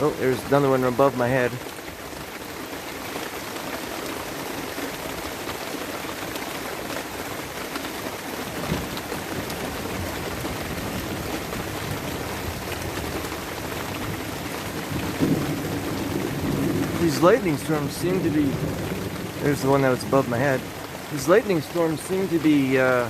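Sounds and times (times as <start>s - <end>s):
steady rain falling: 0.0s - 23.0s
low rumble of thunder: 8.5s - 22.4s.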